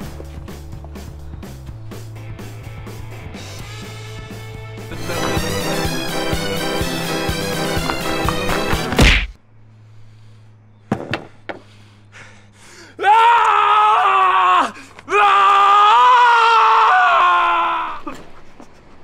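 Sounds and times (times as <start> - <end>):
person screaming: 12.9 - 18.2.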